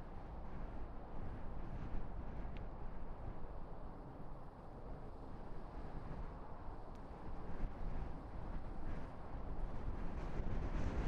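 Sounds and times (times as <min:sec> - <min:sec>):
strong wind buffeting microphone: 0:07.3 - 0:11.0.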